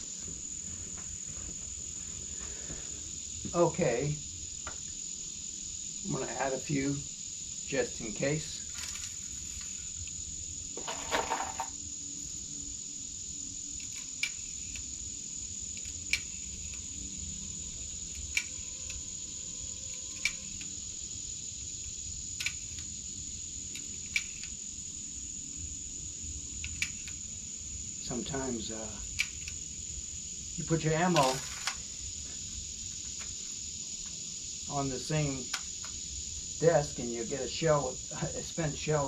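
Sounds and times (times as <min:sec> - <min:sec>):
cricket trill: 0:00.0 - 0:39.0
brief rustle: 0:08.7 - 0:09.8, 0:31.1 - 0:31.9.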